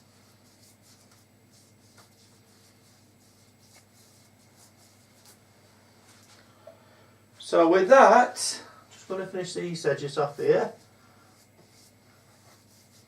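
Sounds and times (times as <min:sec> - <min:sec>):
soft scratching of glue spreading: 0:00.0 - 0:05.5, 0:10.2 - 0:13.0
low room hum: 0:00.0 - 0:13.0.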